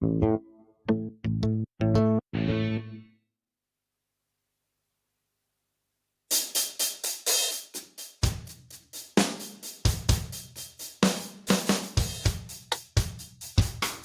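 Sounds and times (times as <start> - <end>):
cymbal and hi-hat strokes: 6.3 - 14.0.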